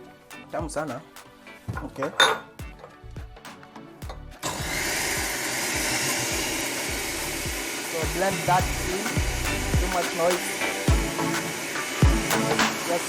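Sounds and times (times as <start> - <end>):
background music with beat: 0.0 - 13.0
blender motor running: 4.5 - 7.9.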